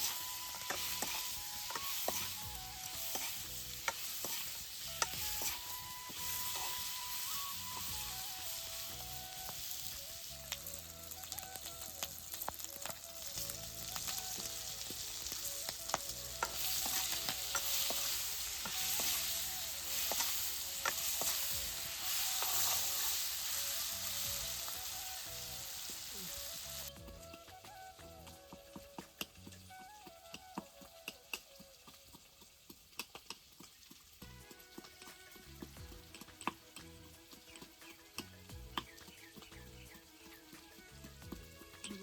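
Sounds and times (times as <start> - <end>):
utensil clicking on pan: 0.0 - 25.9
meat sizzling in a pan: 0.0 - 42.0.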